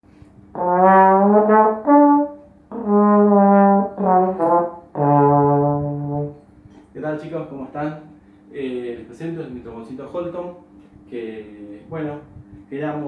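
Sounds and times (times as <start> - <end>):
trombone playing held notes: 0.5 - 6.4.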